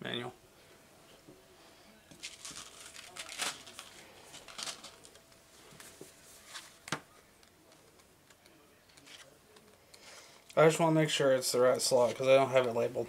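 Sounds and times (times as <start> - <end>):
packaging rustling and crinkling: 2.1 - 6.9.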